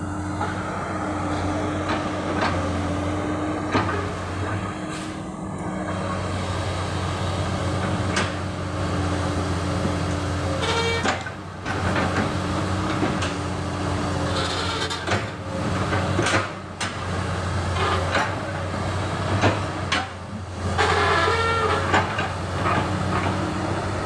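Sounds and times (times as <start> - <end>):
excavator diesel engine running: 0.0 - 24.0
high squeals from excavator arm: 10.4 - 11.4, 14.2 - 15.7, 17.1 - 18.4, 20.5 - 22.2.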